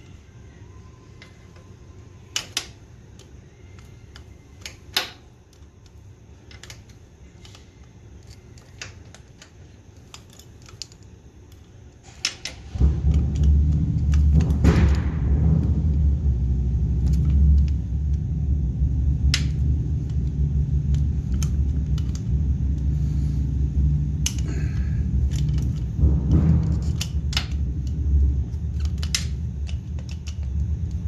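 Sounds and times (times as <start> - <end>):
wrench and parts clicking: 2.3 - 15.0, 25.2 - 31.0
loud low rumble: 12.6 - 31.0.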